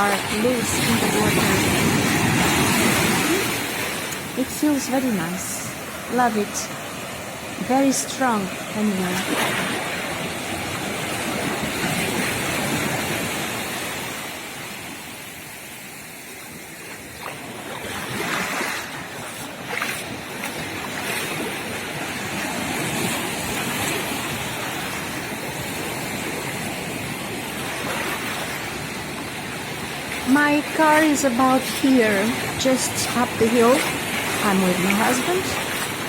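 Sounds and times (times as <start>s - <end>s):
surf washing in and breaking: 0.0s - 36.0s.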